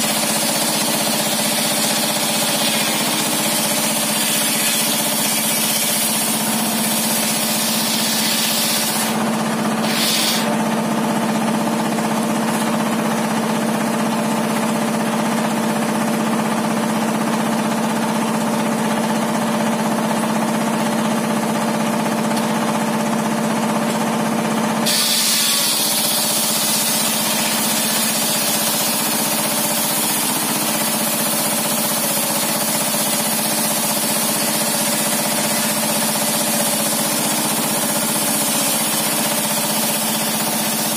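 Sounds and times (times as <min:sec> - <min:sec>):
table saw droning: 0:00.0 - 0:10.6, 0:24.8 - 0:40.9.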